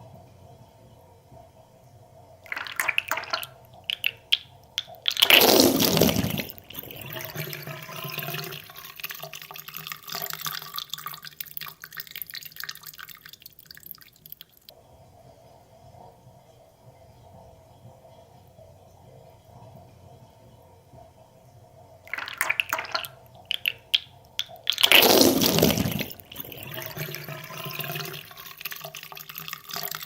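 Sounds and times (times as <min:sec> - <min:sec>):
water splashes: 0:02.4 - 0:14.7, 0:22.1 - 0:30.0
water gurgling down plughole: 0:02.5 - 0:14.7, 0:22.1 - 0:30.0.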